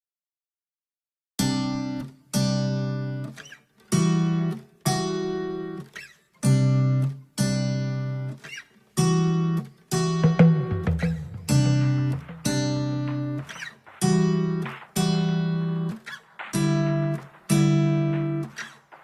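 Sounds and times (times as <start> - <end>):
acoustic guitar strumming chords: 3.9 - 19.0.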